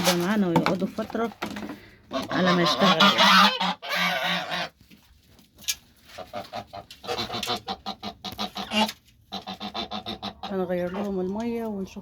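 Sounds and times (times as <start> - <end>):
waterfowl calling: 2.1 - 4.8, 6.1 - 11.2.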